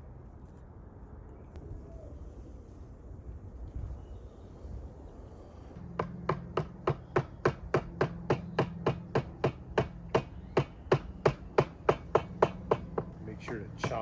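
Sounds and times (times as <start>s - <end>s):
chisel chopping into wood: 6.0s - 14.0s.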